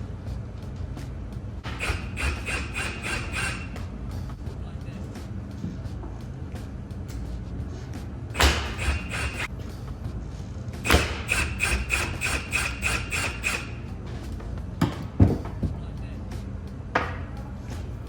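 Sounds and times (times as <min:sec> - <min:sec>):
impact wrench hammering: 0:01.6 - 0:04.4, 0:08.3 - 0:09.5, 0:10.8 - 0:13.9
sharp knocks: 0:08.4 - 0:09.5, 0:10.8 - 0:13.7.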